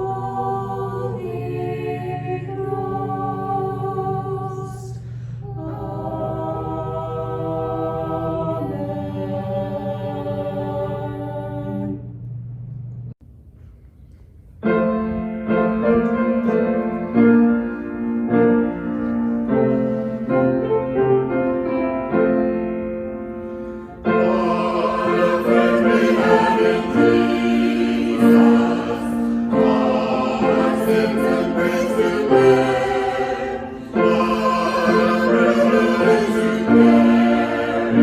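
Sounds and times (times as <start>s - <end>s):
piano playing slow hymn: 0.0s - 12.0s, 14.6s - 38.0s
voices singing: 0.0s - 12.2s, 24.0s - 38.0s.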